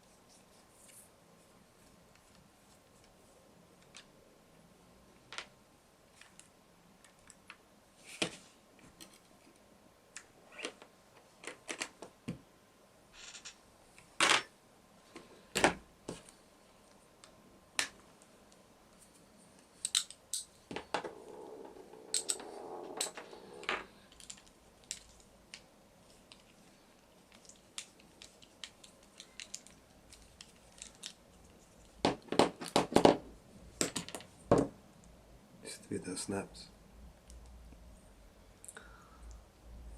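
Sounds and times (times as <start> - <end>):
small parts and tools clicking: 19.8 - 20.5, 22.1 - 23.3, 24.1 - 25.6, 27.3 - 31.2.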